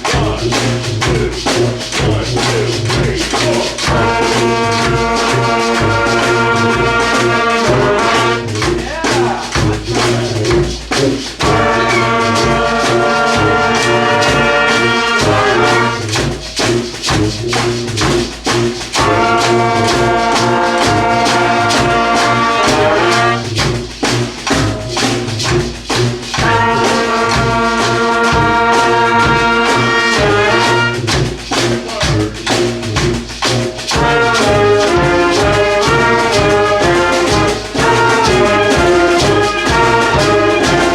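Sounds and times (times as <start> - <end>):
brass band chords: 0.0 - 40.9
drums and percussion: 0.0 - 40.9
person counting aloud: 2.4 - 10.6, 11.4 - 16.1, 31.8 - 32.4.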